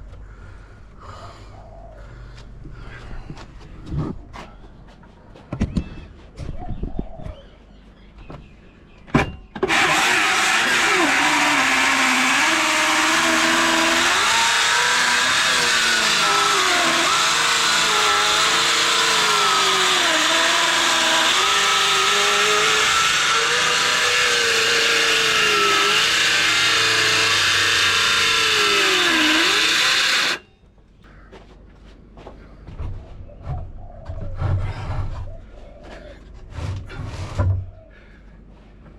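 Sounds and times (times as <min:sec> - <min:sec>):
power saw cutting wood: 0:09.6 - 0:30.5.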